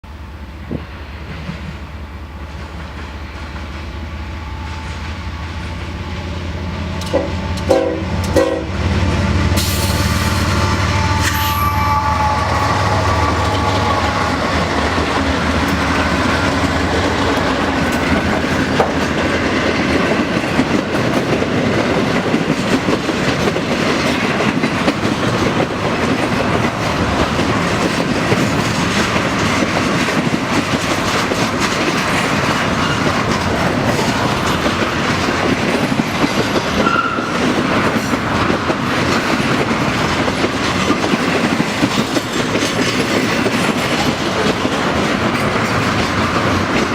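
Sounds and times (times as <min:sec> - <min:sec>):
train wheels rumbling on rails: 0:00.0 - 0:46.9
train horn: 0:04.4 - 0:16.0, 0:36.8 - 0:37.5
wheels clacking over rail joints: 0:12.2 - 0:46.9.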